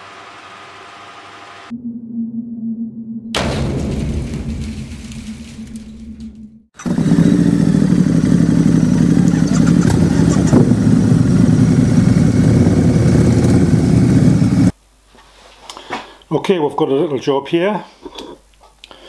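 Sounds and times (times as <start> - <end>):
engine running steadily: 6.8 - 14.7.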